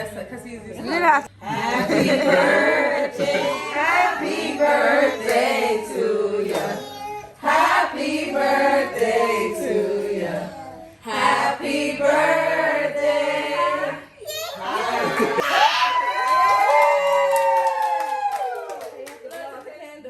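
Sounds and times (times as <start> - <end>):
voices singing a melody: 1.4 - 15.4.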